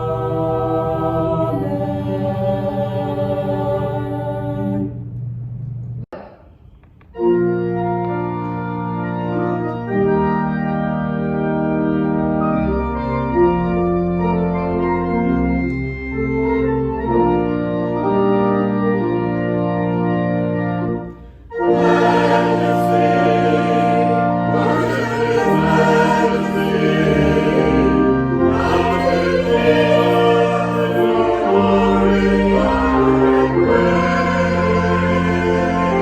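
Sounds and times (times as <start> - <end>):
choir singing: 0.0 - 5.0, 21.5 - 36.0
church organ chords: 0.0 - 5.2, 7.1 - 36.0.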